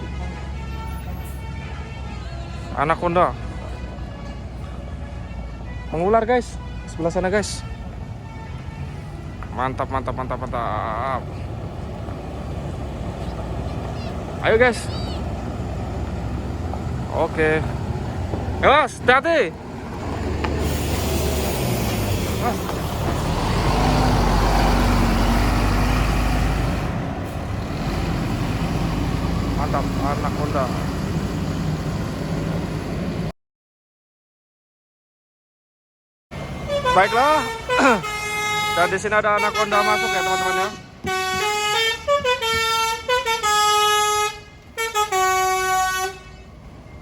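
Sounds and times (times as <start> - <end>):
bus musical horn playing tune: 0.0 - 2.8, 36.6 - 46.6
diesel bus engine rumbling: 0.0 - 33.3, 36.3 - 47.0.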